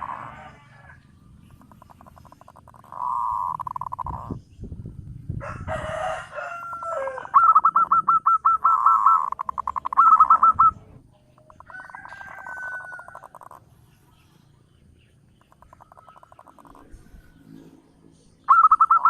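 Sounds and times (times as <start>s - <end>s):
dove cooing: 0.0s - 4.4s, 6.9s - 13.6s, 18.5s - 19.0s
harsh bird call: 6.8s - 10.9s, 18.4s - 19.0s.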